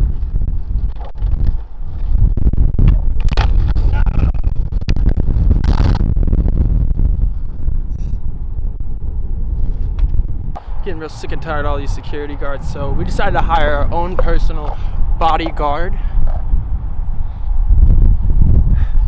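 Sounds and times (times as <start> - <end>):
wind buffeting microphone: 0.0 - 19.0
skateboard wheels rolling on pavement: 9.6 - 17.2.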